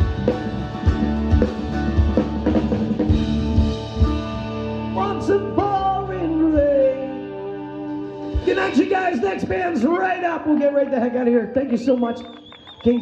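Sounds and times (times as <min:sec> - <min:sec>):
live rock band playing: 0:00.0 - 0:10.2.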